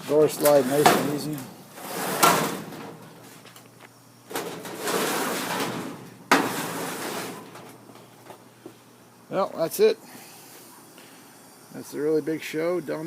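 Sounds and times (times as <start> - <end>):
sliding door rolling on track: 0.2 - 3.0, 4.3 - 7.7.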